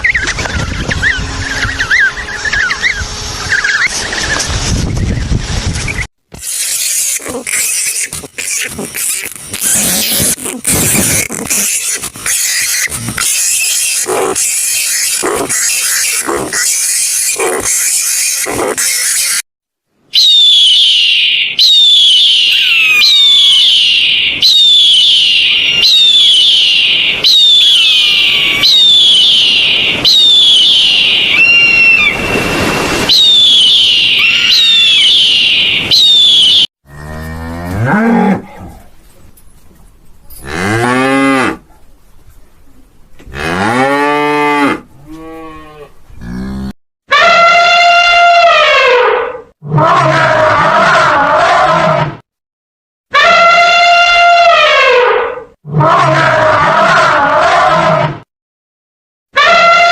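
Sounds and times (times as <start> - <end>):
high-pitched falling call: 20.2 - 36.7.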